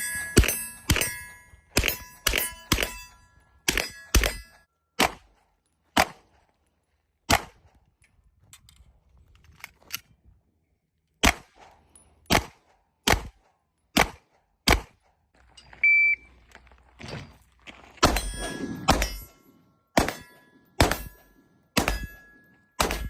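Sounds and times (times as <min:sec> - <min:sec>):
distant pops and steel pings: 0:00.0 - 0:06.4, 0:18.0 - 0:23.0
sharp gunshots: 0:03.7 - 0:05.3, 0:06.0 - 0:06.2, 0:07.3 - 0:07.6, 0:11.2 - 0:11.7, 0:12.3 - 0:13.4, 0:14.0 - 0:15.0, 0:18.0 - 0:19.3, 0:20.0 - 0:21.2, 0:21.8 - 0:22.2, 0:22.8 - 0:23.0.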